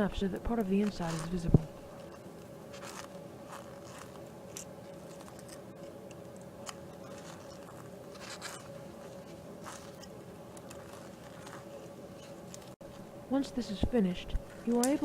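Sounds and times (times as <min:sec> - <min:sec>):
faint steady hum: 0:00.0 - 0:15.0
wire cutters snipping metal: 0:14.7 - 0:15.0.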